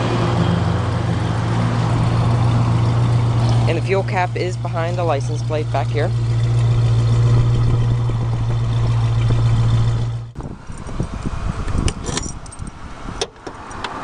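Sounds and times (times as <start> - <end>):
steady low hum: 0.8 - 12.7
keys jangling: 12.0 - 12.8.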